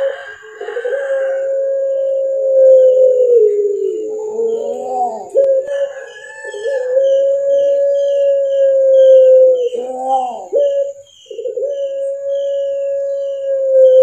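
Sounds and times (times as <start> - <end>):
dove cooing: 0.0 - 14.0.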